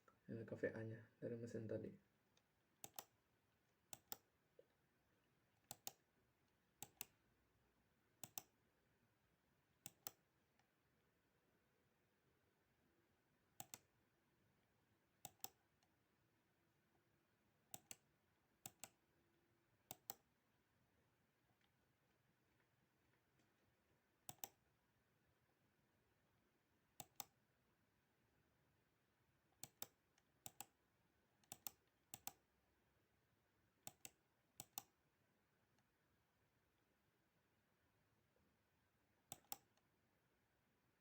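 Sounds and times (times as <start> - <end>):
computer mouse clicks: 2.4 - 3.2, 3.9 - 4.3, 5.6 - 6.1, 6.8 - 7.2, 8.2 - 8.6, 9.8 - 10.7, 13.6 - 13.9, 15.2 - 15.9, 17.7 - 19.0, 19.8 - 20.3, 24.2 - 24.7, 27.0 - 27.4, 29.6 - 30.8, 31.4 - 32.5, 33.8 - 35.0, 39.3 - 39.8.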